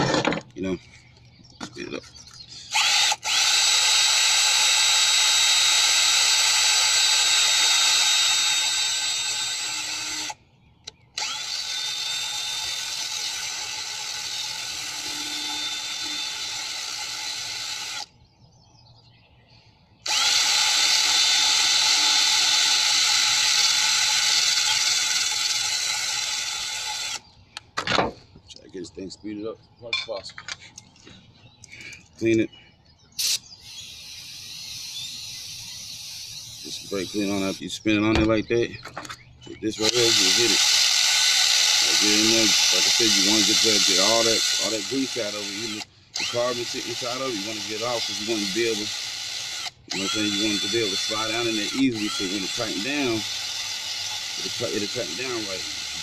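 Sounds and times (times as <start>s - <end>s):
power drill whining: 2.6s - 10.4s, 11.2s - 18.1s, 20.0s - 27.2s, 33.2s - 37.7s, 39.7s - 56.0s.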